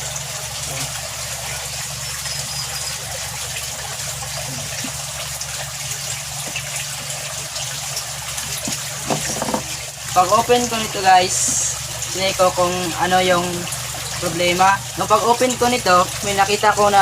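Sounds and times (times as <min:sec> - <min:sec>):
bubbling water: 0:00.0 - 0:17.0
low electrical hum: 0:00.0 - 0:17.0.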